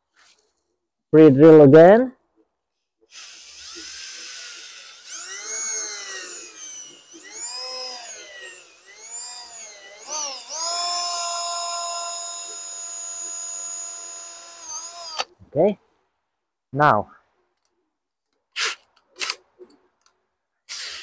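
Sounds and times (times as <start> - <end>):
electric drill motor whine: 3.1 - 15.3.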